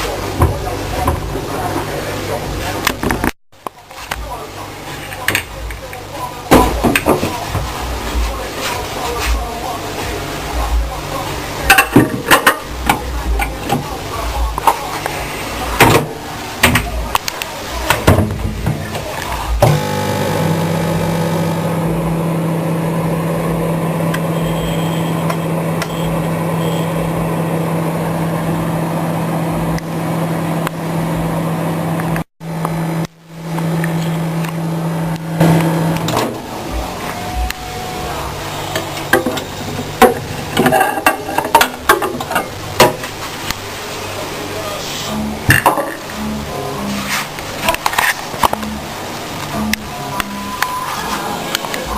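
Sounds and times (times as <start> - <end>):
electric motor humming: 19.6 - 24.2.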